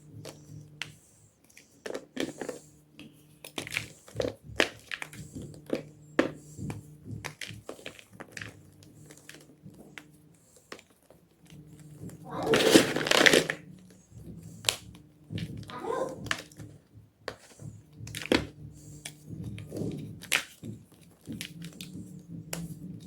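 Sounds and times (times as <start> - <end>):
faint low hum: 0.0 - 23.0.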